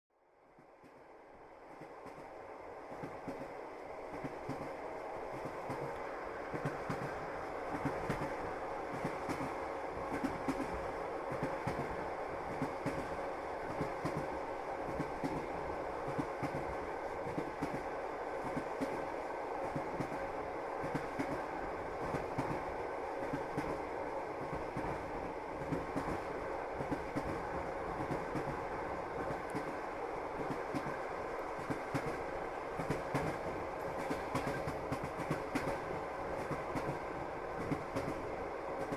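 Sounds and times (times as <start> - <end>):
train running noise: 0.3 - 38.9
train wheels clacking on rail joints: 4.1 - 17.8, 25.6 - 29.8, 31.6 - 32.2, 32.8 - 37.0, 37.6 - 38.9.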